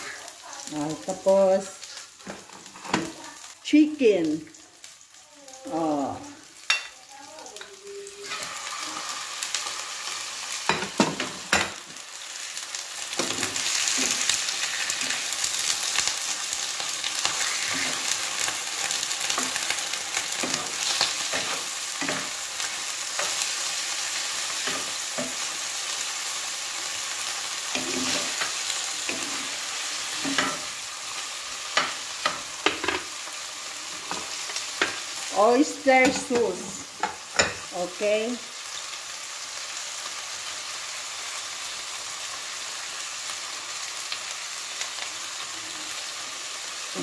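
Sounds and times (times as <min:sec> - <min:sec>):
chicken sizzling in hot oil: 0:00.0 - 0:47.0.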